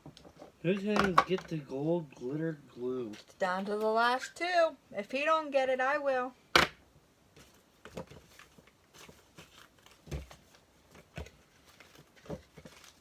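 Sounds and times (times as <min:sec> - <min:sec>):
faint rustling: 0:07.3 - 0:13.0.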